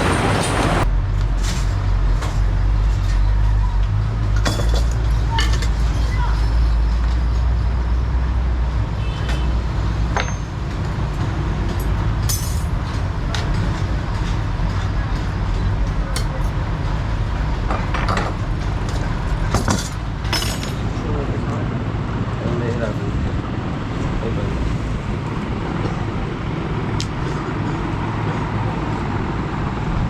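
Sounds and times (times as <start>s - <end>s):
low rumble of traffic: 0.0s - 30.0s.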